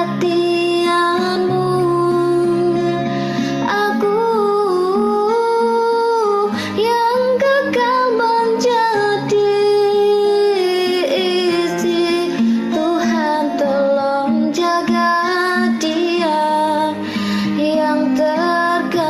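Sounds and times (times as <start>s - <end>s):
guitar: 0.0s - 19.0s
woman singing: 0.0s - 19.0s.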